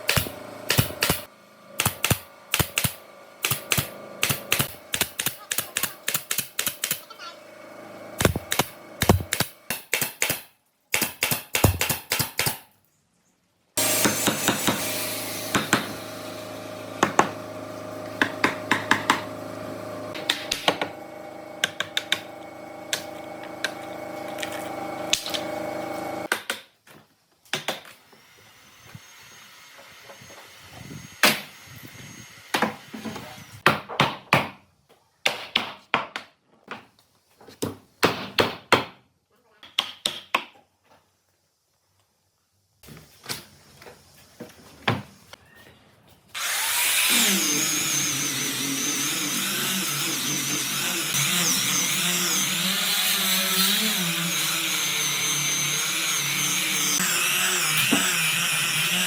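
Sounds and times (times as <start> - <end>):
machine running: 13.8 - 26.3
hammering on wood: 14.0 - 14.9, 15.5 - 16.0, 17.0 - 17.4, 18.2 - 19.3.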